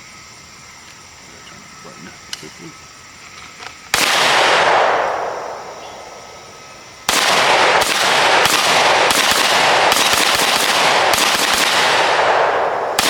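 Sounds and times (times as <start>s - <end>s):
rapid gunfire: 4.0s - 5.1s, 7.1s - 13.0s.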